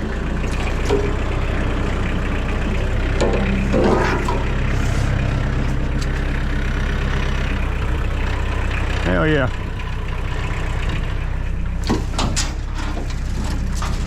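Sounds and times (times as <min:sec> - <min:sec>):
tractor engine running: 0:00.0 - 0:14.0.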